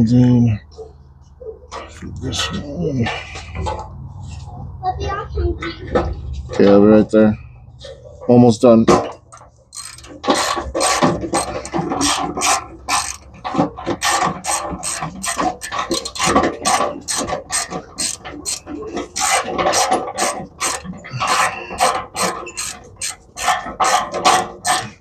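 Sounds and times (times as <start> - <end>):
ratchet wrench clicking: 9.4 - 13.4, 14.0 - 25.0.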